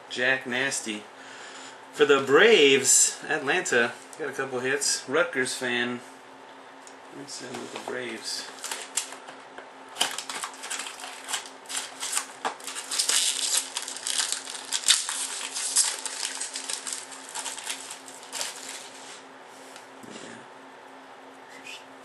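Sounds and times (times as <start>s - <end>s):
cards and packaging crinkling: 7.7s - 19.2s.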